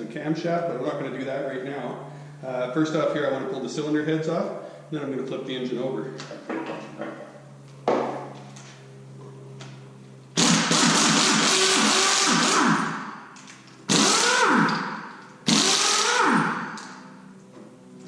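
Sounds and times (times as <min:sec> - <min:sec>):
power wrench spinning bolts: 0:10.4 - 0:17.0.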